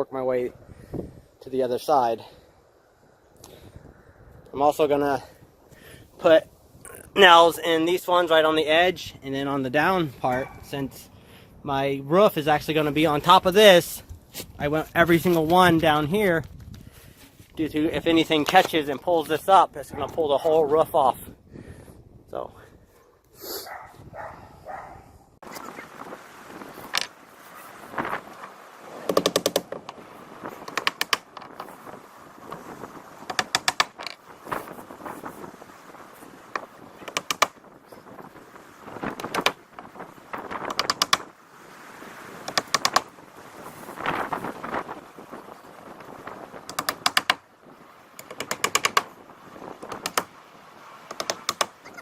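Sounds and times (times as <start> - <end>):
nails being driven into roof: 29.0 - 31.8, 33.2 - 34.2, 36.6 - 37.6, 39.1 - 39.6, 40.6 - 41.3, 42.4 - 43.1, 46.6 - 47.5, 48.2 - 50.4, 51.0 - 51.8.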